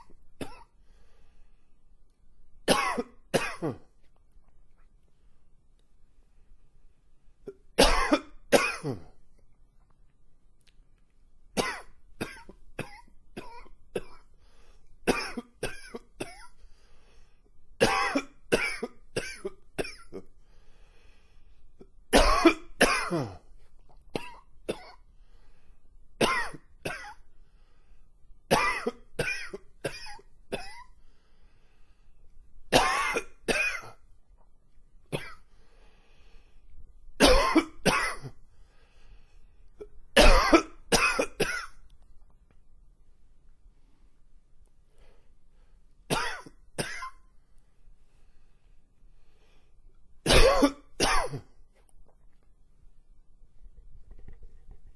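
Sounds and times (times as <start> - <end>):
man coughing: 2.7 - 3.9, 7.8 - 9.2, 17.8 - 20.2, 22.2 - 23.4, 37.2 - 38.3, 40.2 - 41.7, 46.1 - 47.2, 50.3 - 51.5.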